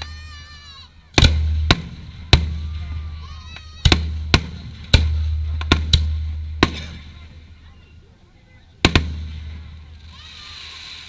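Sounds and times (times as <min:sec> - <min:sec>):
fireworks bangs: 0:01.1 - 0:07.5, 0:08.8 - 0:11.0.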